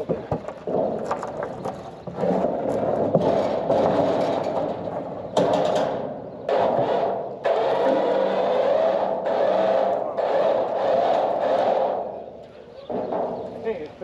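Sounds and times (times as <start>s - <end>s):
winch motor running under load: 6.5s - 14.0s.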